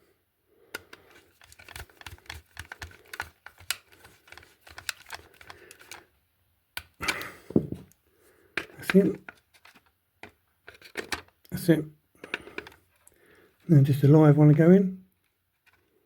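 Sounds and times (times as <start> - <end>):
plastic and wire clicks: 0.7 - 6.0, 12.2 - 13.2
knocks on plastic: 7.5 - 7.8.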